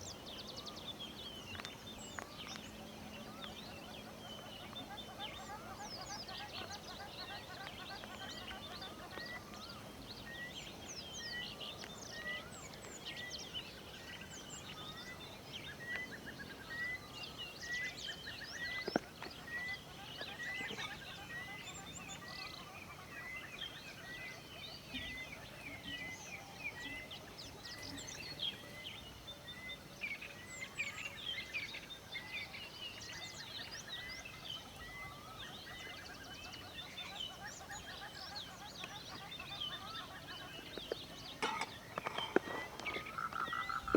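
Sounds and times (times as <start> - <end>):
birds chirping and trilling: 32.2 - 43.9.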